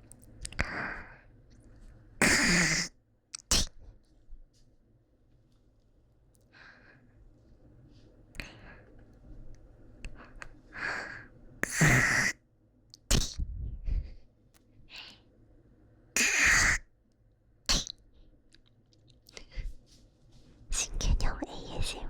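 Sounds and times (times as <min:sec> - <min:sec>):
person hawking up from throat: 0:02.2 - 0:03.7, 0:11.6 - 0:12.3, 0:16.2 - 0:16.8, 0:17.7 - 0:17.9
person spitting: 0:02.2 - 0:03.8, 0:11.6 - 0:12.4, 0:13.0 - 0:13.4, 0:16.2 - 0:16.8, 0:17.7 - 0:18.0.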